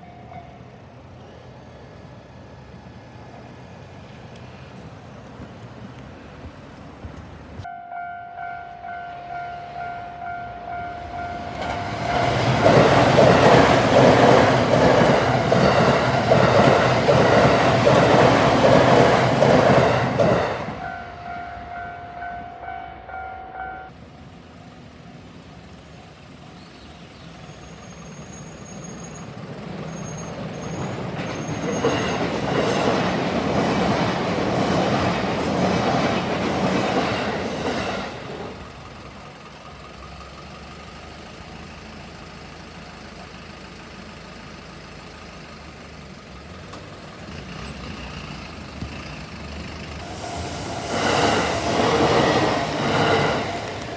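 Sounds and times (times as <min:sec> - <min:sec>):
railroad crossing bell clanging: 0:00.0 - 0:00.8, 0:07.6 - 0:24.0
train rumbling past: 0:00.0 - 0:40.6, 0:46.0 - 0:53.9.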